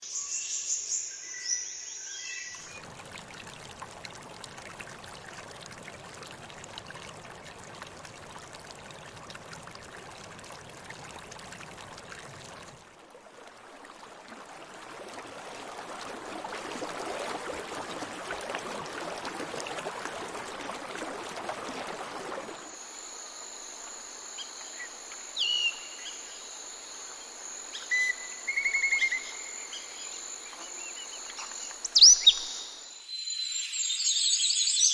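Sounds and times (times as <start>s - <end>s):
rushing water: 2.6s - 33.0s
high insect drone: 22.6s - 31.8s
bird calls: 27.7s - 32.8s.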